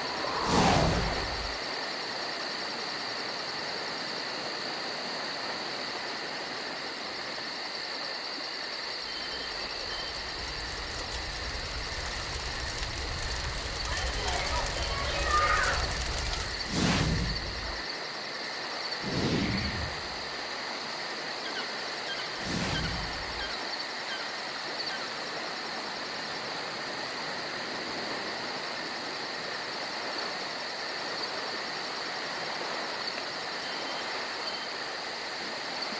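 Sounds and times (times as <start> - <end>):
wind rumble on microphone: 0.0 - 1.6, 9.4 - 17.8, 22.4 - 23.5
faint outdoor hiss: 0.0 - 35.9
insects trilling: 6.4 - 25.6.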